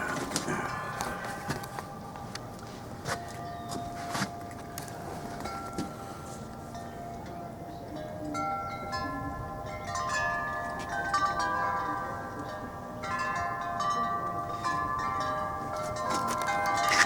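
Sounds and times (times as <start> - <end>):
chimes ringing: 5.4 - 17.0.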